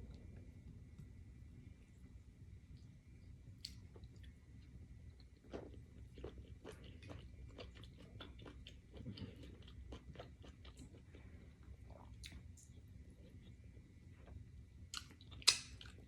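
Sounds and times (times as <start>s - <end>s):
person chewing with wet mouth smacks: 5.3s - 13.6s.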